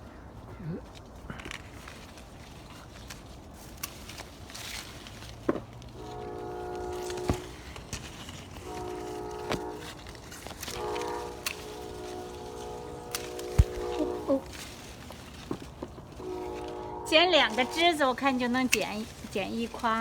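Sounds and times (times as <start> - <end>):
distant horn chord blasts: 5.9 - 20.0.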